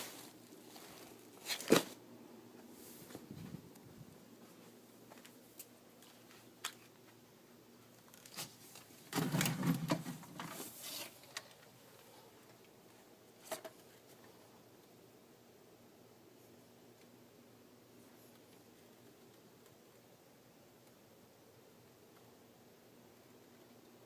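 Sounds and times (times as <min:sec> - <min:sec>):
rustling and scraping: 0:00.0 - 0:02.0, 0:02.6 - 0:07.2, 0:07.9 - 0:12.6.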